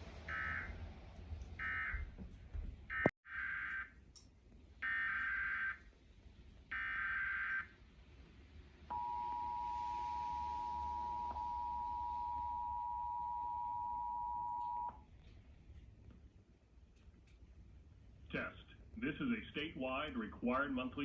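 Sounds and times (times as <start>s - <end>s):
two-tone alert signal: 8.9s - 14.9s.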